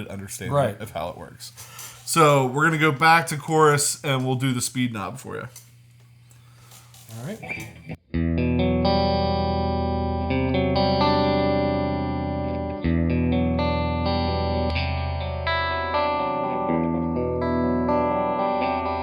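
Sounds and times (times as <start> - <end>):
electric guitar chords with modulation: 7.6 - 19.0.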